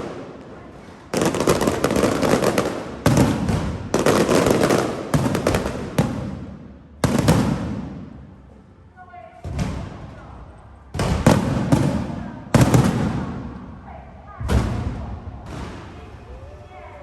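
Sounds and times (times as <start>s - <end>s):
fireworks bangs: 0.0s - 8.4s, 11.0s - 13.7s
fireworks crackling: 0.0s - 8.5s, 11.2s - 13.6s.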